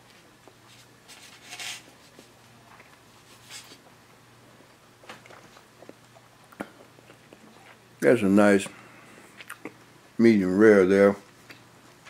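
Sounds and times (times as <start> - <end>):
low steady hum: 0.0 - 12.0
person chewing: 5.2 - 7.8, 9.2 - 9.8
soft hissing breaths: 8.4 - 9.4.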